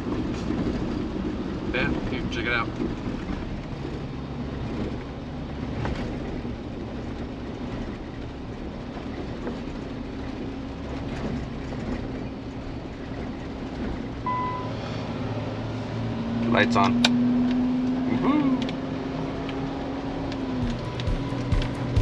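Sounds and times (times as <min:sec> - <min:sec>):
engine and tyres rumbling in snow: 0:00.0 - 0:22.0
light clatter: 0:01.8 - 0:14.2
short high beep: 0:14.3 - 0:14.8.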